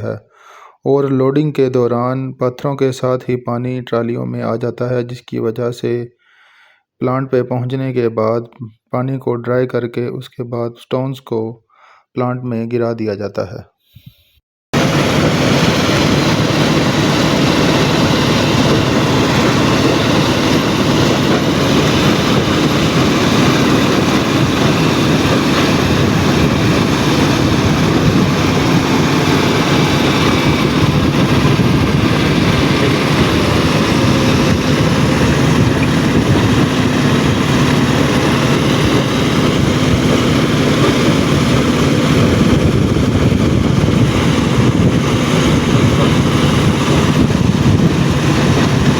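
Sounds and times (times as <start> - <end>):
heavy machinery running: 14.8 - 48.9.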